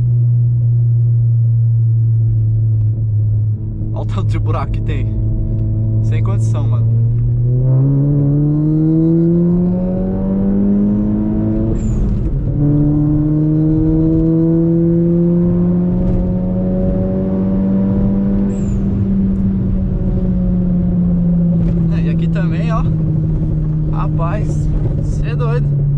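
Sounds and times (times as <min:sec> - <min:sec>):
car engine revving: 0:00.0 - 0:25.9.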